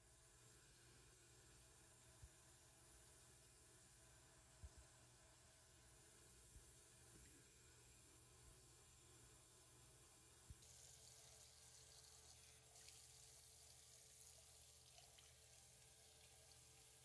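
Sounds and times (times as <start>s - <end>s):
faint water running from faucet: 10.6s - 17.0s.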